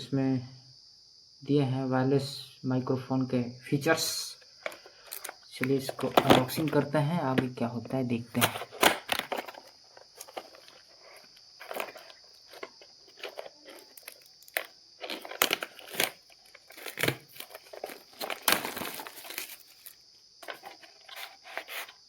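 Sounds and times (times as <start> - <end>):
packaging crinkling and rustling: 4.6 - 6.9, 8.4 - 22.0.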